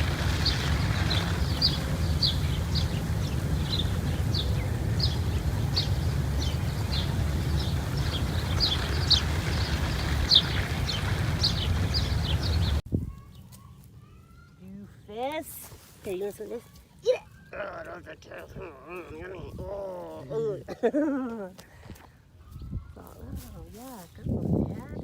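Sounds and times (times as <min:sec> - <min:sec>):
steady low rumble: 0:00.0 - 0:13.1
bird chirping: 0:00.0 - 0:13.5.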